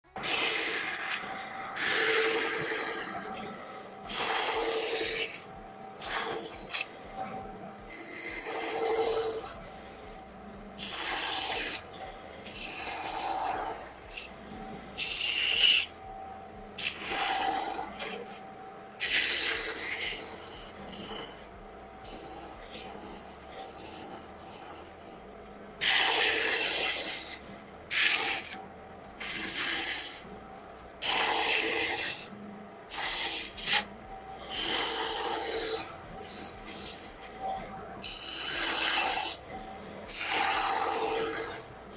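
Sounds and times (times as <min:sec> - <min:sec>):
rasping strokes on wood: 0:00.1 - 0:07.2, 0:10.8 - 0:14.4, 0:32.9 - 0:41.7.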